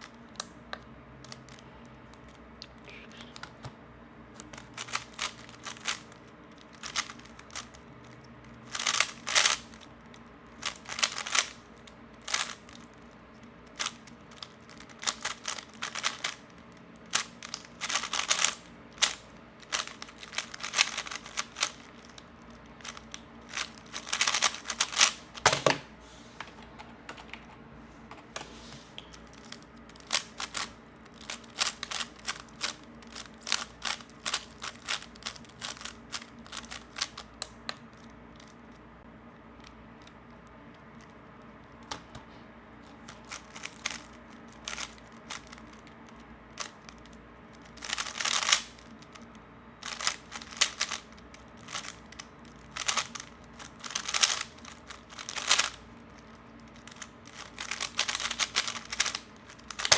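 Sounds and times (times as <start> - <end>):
rapid plastic clicking: 4.4 - 25.8, 29.3 - 38.6, 43.1 - 49.2, 49.8 - 59.9.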